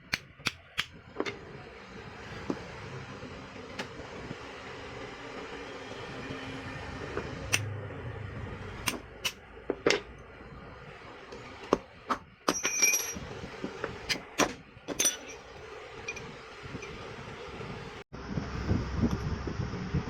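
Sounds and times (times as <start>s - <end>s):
metal taps and clinks: 12.5s - 13.2s.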